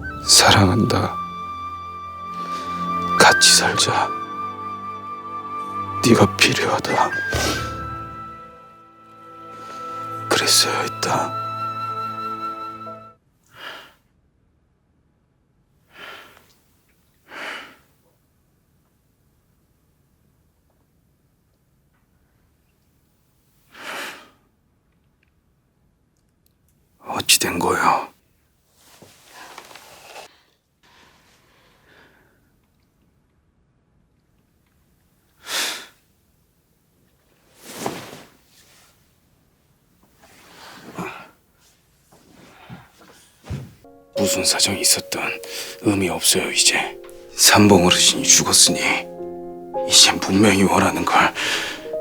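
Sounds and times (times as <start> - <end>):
man breathing heavily: 51.4 - 51.9.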